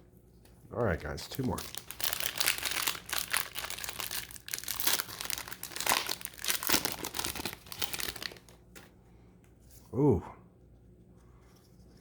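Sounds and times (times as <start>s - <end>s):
plastic wrapper tearing and crinkling: 0.9s - 8.6s.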